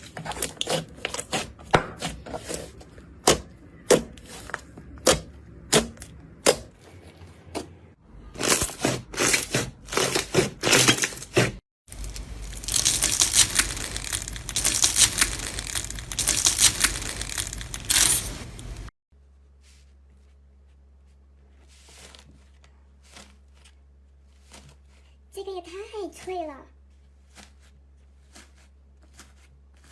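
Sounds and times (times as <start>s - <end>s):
slime crackling and popping: 11.9s - 18.9s.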